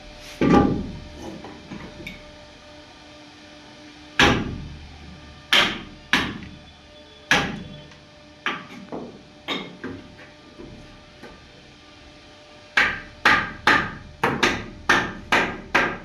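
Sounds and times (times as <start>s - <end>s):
hammer striking wood: 4.2s - 4.6s, 5.5s - 6.6s, 7.3s - 7.7s, 8.4s - 10.1s, 12.8s - 16.0s.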